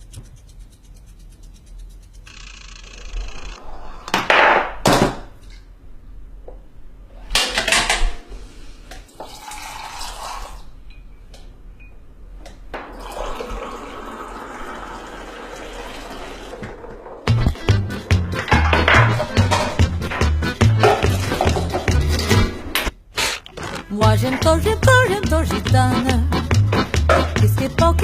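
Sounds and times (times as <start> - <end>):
water running and pouring: 12.9 - 16.6
dishes clattering: 18.4 - 22.9.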